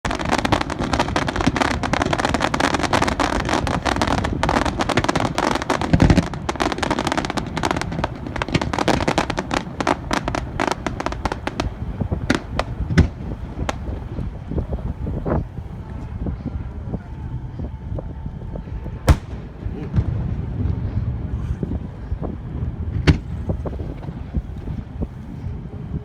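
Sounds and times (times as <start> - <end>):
deep firework boom: 0.0 - 15.2, 19.1 - 21.9
fireworks crackling: 0.0 - 15.5, 19.1 - 20.1.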